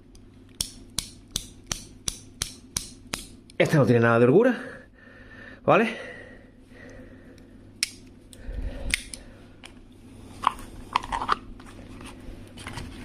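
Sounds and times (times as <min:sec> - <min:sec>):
multitool metallic clicks and snaps: 0:00.1 - 0:03.6, 0:07.8 - 0:09.8.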